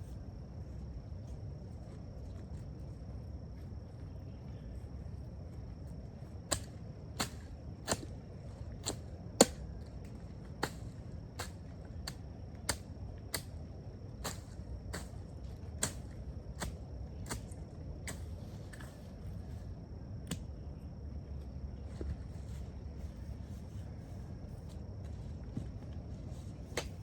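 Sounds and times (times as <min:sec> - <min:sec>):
hand tool chopping soil: 0:06.5 - 0:08.1, 0:08.8 - 0:09.6, 0:10.6 - 0:13.5.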